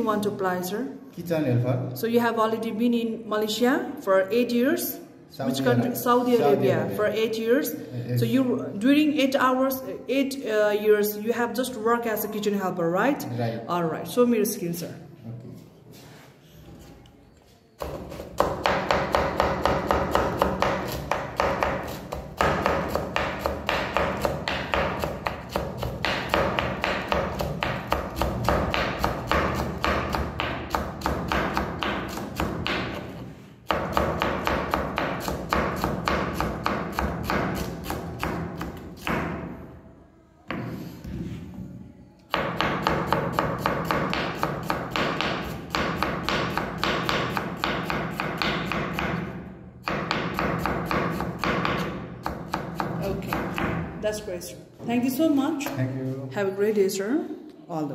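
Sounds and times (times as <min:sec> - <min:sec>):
knife chopping on cutting board: 0:17.8 - 0:39.4, 0:42.3 - 0:53.8.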